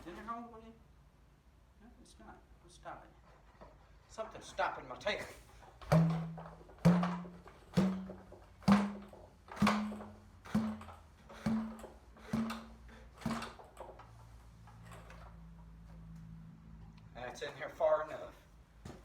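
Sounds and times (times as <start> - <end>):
ramrod pounding in tube: 5.8 - 14.0.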